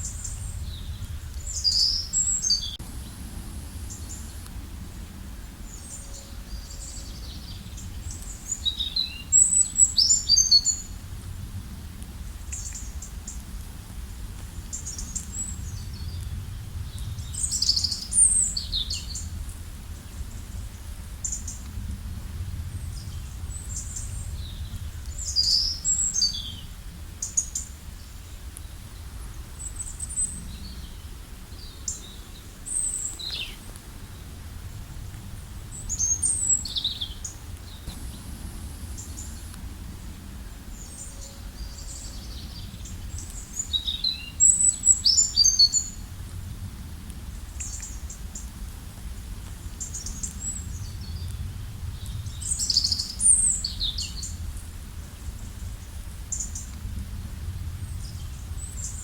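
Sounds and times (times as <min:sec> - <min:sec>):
low background rumble: 0:00.0 - 0:59.0.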